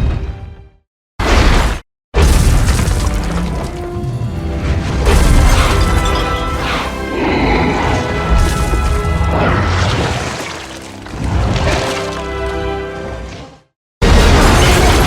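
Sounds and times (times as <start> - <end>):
crashes and booms: 1.2 - 7.0, 14.0 - 15.0
film music: 2.8 - 13.7.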